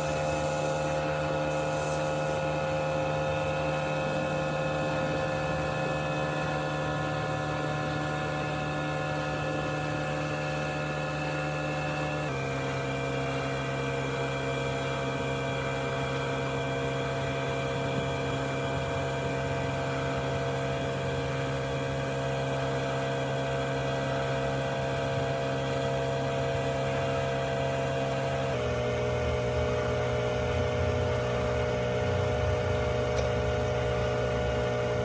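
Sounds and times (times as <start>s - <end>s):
motor humming: 0.0s - 12.4s.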